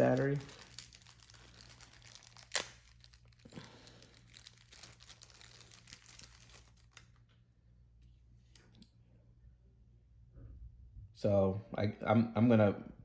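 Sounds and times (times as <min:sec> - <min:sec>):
plastic parts crinkling and rustling: 0:00.0 - 0:07.4.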